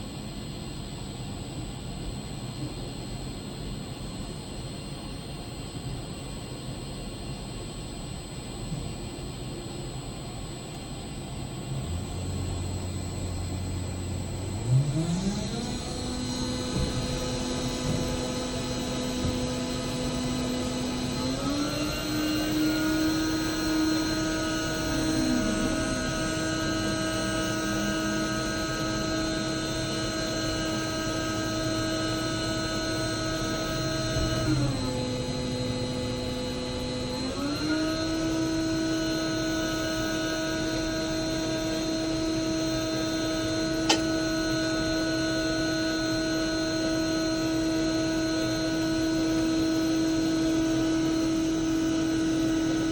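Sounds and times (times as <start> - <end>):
heavy machine whining: 11.6 - 52.9
sharp click: 43.8 - 44.1.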